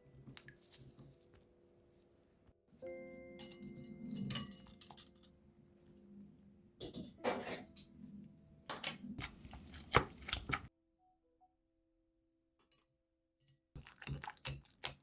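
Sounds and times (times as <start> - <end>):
faint background music: 0.0 - 10.6
utensils clattering against dishes: 3.4 - 5.4, 6.8 - 8.0.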